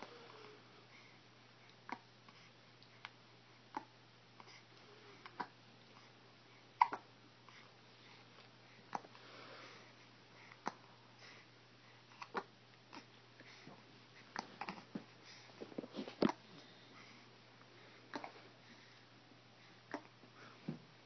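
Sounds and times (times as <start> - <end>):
hiccups: 6.8 - 7.1.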